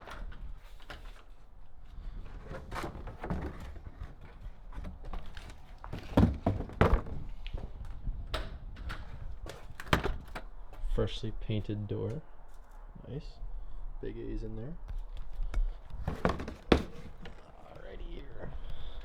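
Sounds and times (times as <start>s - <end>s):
heavy thuds: 2.7s - 7.8s, 15.4s - 19.0s.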